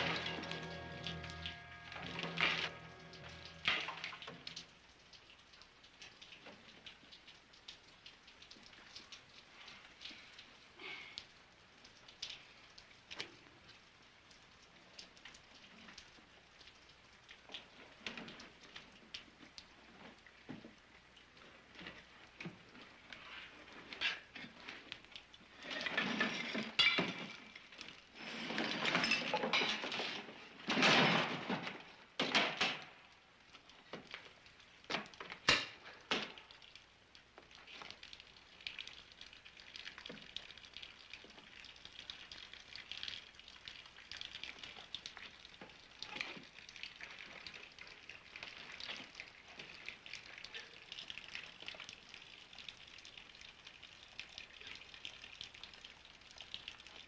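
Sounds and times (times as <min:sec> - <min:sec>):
falling debris crashing: 0:00.0 - 0:04.3, 0:28.4 - 0:32.8
sharp knocks and cracks: 0:28.9 - 0:33.1, 0:34.8 - 0:36.6.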